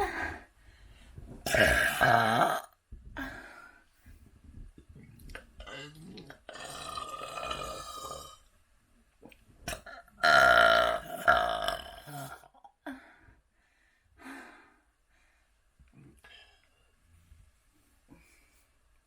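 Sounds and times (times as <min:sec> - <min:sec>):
person burping: 0:01.5 - 0:02.7, 0:05.6 - 0:08.4, 0:09.7 - 0:12.7.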